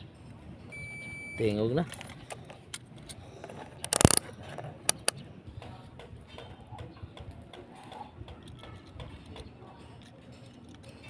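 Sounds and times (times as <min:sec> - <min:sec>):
sharp clicks: 0:03.8 - 0:04.2, 0:04.9 - 0:05.2.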